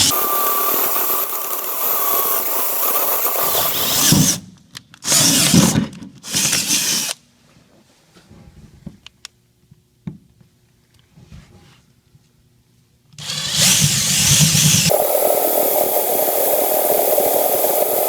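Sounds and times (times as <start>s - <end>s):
power drill boring: 0.0s - 4.4s, 5.0s - 7.2s, 13.2s - 18.0s.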